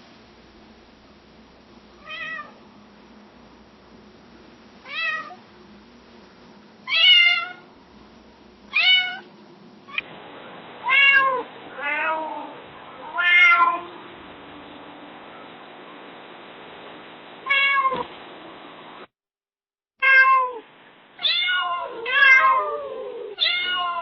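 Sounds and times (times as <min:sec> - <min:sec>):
background hiss: 0:00.0 - 0:19.1
cat meowing: 0:02.0 - 0:02.6, 0:04.9 - 0:05.4, 0:06.9 - 0:07.6, 0:08.7 - 0:09.3, 0:10.8 - 0:13.9, 0:17.5 - 0:18.0, 0:20.0 - 0:20.6, 0:21.2 - 0:24.0.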